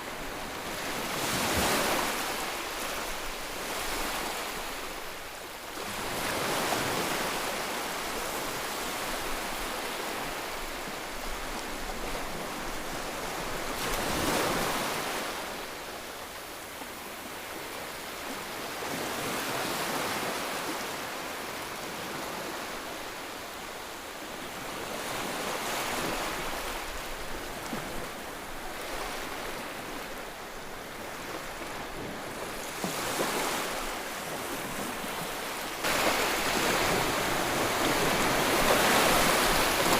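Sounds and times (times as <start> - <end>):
sea waves breaking: 0.1 - 5.1, 24.7 - 39.9.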